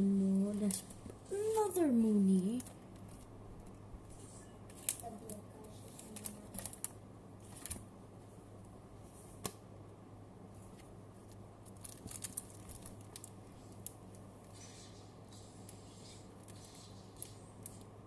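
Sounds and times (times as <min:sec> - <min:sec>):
steady low hum: 0:00.0 - 0:18.0
trading cards clicking and rustling: 0:11.3 - 0:17.9.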